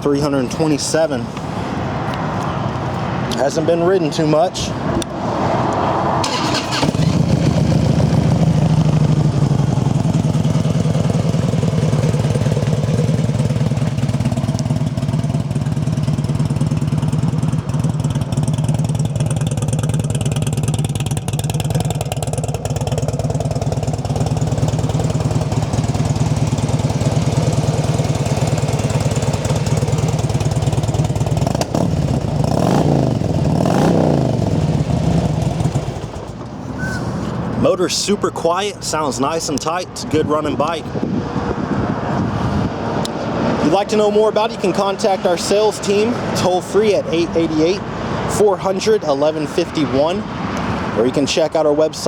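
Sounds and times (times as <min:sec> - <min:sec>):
motorcycle throttle blips: 0:06.2 - 0:37.6
motorcycle engine idling: 0:06.3 - 0:36.6.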